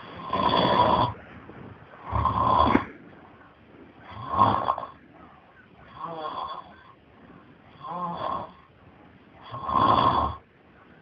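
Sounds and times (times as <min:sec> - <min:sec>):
man snoring loudly: 0:00.2 - 0:01.2, 0:02.0 - 0:02.9, 0:04.1 - 0:05.0, 0:06.0 - 0:06.7, 0:07.8 - 0:08.6, 0:09.4 - 0:10.4.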